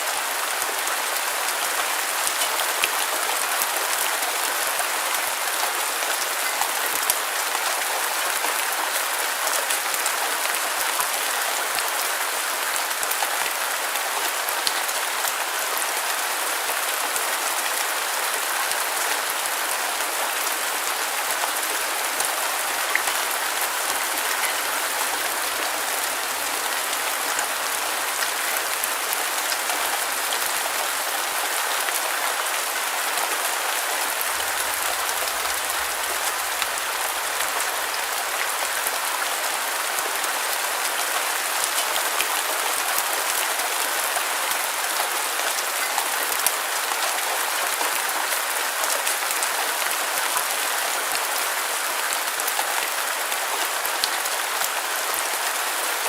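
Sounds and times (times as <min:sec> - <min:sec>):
heavy rain hissing: 0:10.3 - 0:41.5.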